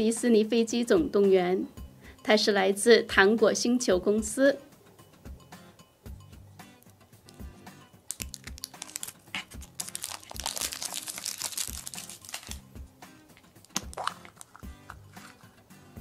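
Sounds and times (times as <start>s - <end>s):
background music with steady beat: 0.0s - 16.0s
wrapper crinkling and tearing: 8.1s - 12.6s, 13.6s - 14.6s.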